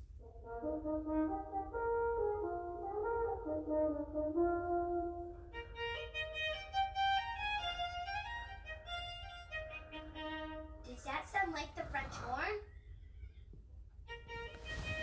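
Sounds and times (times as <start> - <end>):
french horn melody: 0.2 - 7.4
violin melody: 4.6 - 10.9, 14.0 - 15.0.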